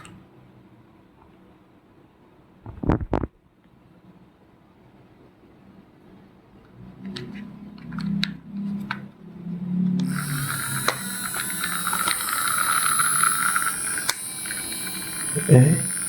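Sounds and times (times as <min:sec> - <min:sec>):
toy electric motor whirring: 0:10.0 - 0:16.0.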